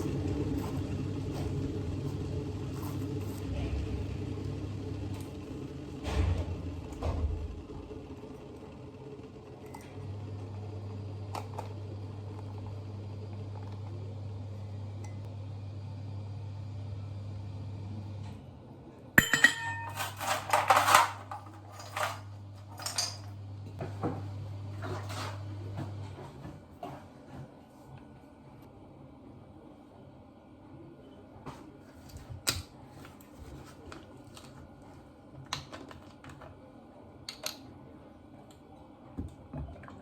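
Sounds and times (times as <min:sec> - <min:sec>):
kitchen appliance humming: 0:00.0 - 0:40.0
glassware and cutlery clinking: 0:19.2 - 0:21.2.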